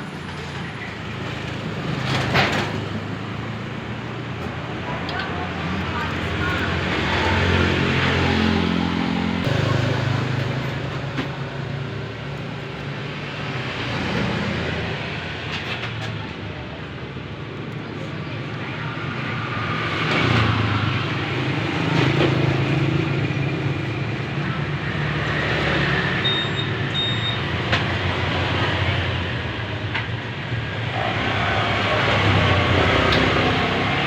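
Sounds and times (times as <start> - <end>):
vehicle engines running: 0.0 - 34.0
short double beep: 26.2 - 27.4.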